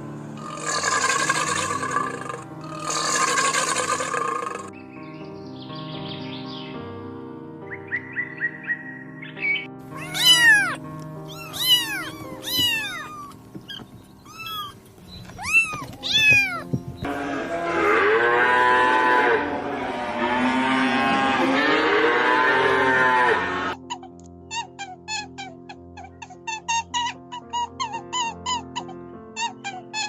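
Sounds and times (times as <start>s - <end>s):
background music: 0.0s - 30.0s
dense animal calling: 0.4s - 4.7s, 9.9s - 16.7s
cat meowing: 9.9s - 16.8s.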